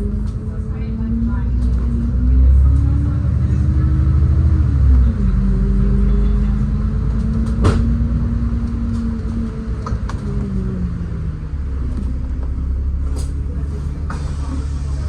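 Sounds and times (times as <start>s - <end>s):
bus engine rumbling: 0.0s - 15.0s.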